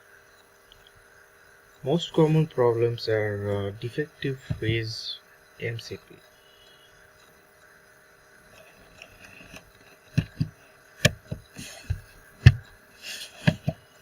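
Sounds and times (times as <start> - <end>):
faint steady hum: 0.0 - 14.0
dull knocks and thumps: 4.4 - 4.8, 10.1 - 12.7, 13.4 - 13.8.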